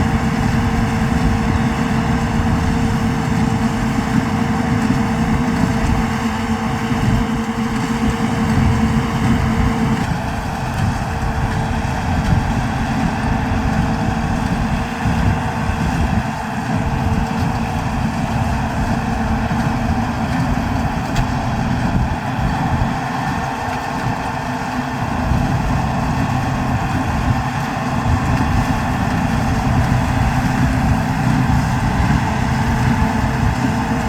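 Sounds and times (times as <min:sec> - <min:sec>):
tractor diesel engine running: 0:00.0 - 0:34.0.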